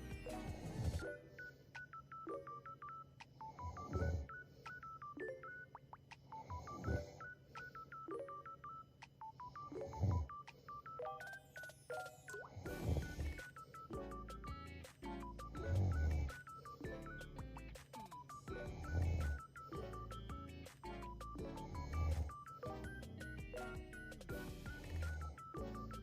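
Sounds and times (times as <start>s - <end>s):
faint electronic beeping tune: 0.0s - 26.0s
woman snoring softly: 0.3s - 1.1s, 3.4s - 4.4s, 6.4s - 7.3s, 9.4s - 10.8s, 12.4s - 13.9s, 15.6s - 16.8s, 18.6s - 19.5s, 21.6s - 22.6s, 24.4s - 25.9s.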